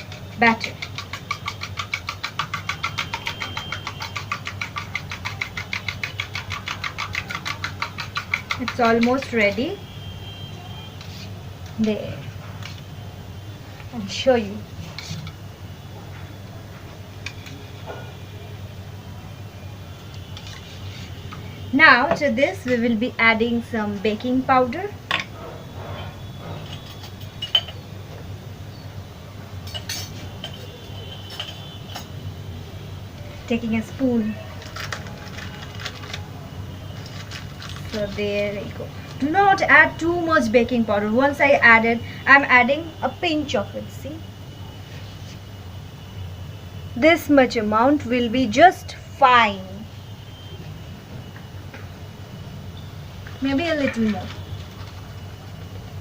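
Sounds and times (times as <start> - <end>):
whisk clicking against container: 0.0 - 9.6
metal spoon clinking on dishes: 26.7 - 27.8, 29.6 - 30.7.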